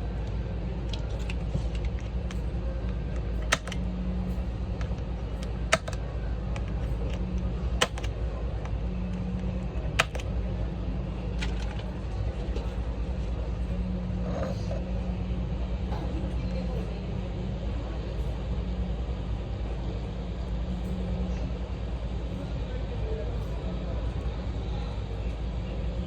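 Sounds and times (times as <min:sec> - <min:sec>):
low hum: 0:00.0 - 0:26.0
sharp clicks of hard objects: 0:04.8 - 0:06.0, 0:07.8 - 0:08.1.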